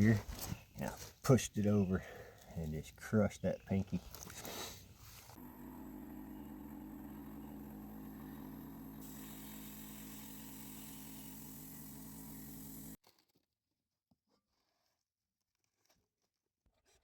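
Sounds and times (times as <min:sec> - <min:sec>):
engine running steadily: 0:05.4 - 0:13.0.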